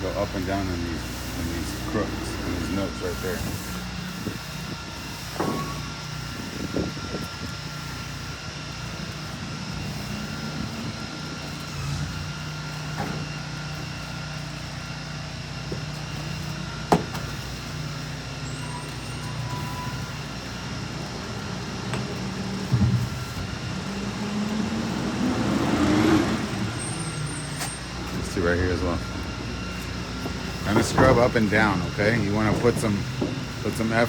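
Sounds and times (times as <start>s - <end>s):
engine running steadily: 0.0s - 34.0s.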